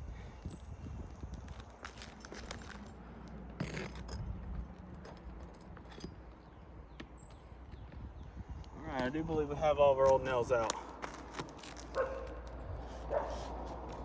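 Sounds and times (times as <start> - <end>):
metallic clinks and scrapes: 1.8 - 6.5.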